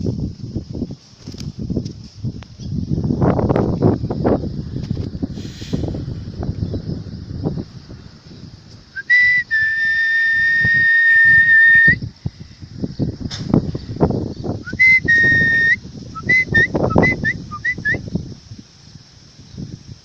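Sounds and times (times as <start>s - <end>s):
person whistling: 9.0s - 12.0s, 14.6s - 18.0s
low rustling and bumps: 12.7s - 14.6s.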